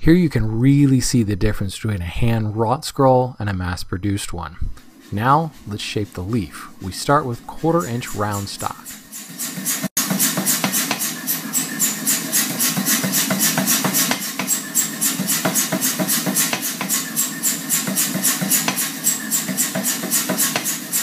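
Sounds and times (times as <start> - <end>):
power hammer pounding steel: 7.1 - 21.0
power hammer motor running: 7.6 - 21.0.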